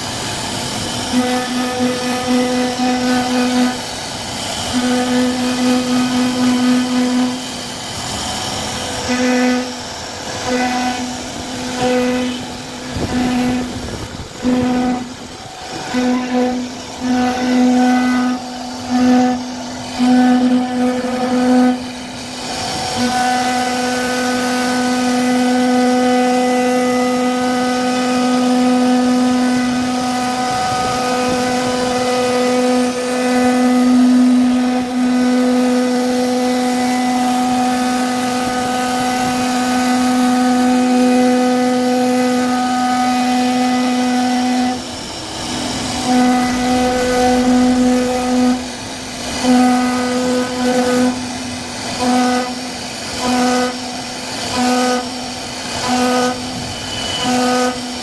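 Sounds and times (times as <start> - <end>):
cutting hiss: 0.0 - 58.0
router spindle whine: 0.0 - 58.0.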